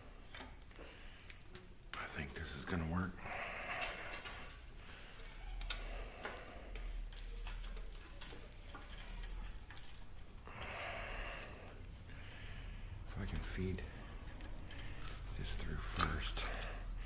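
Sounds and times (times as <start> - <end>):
light clicks and rustling: 3.6 - 10.7.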